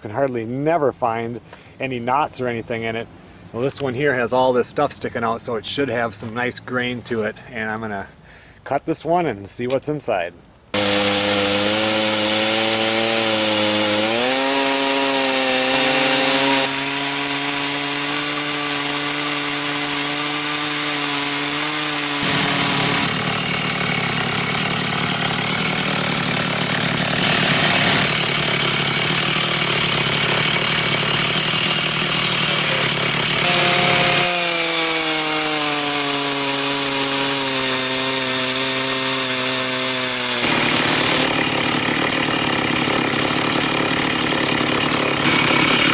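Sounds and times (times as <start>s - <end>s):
chainsaw ripping log: 10.7s - 45.9s.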